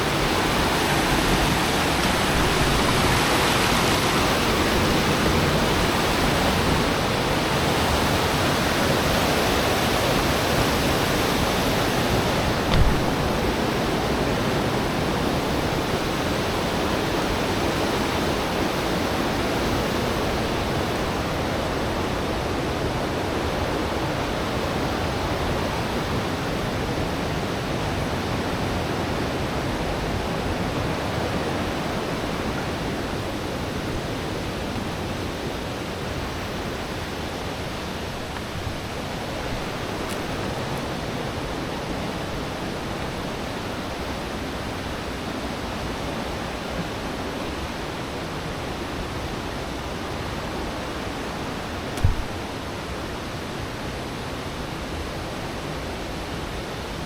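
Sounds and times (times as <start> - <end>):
steady rushing noise: 12.4 - 14.0.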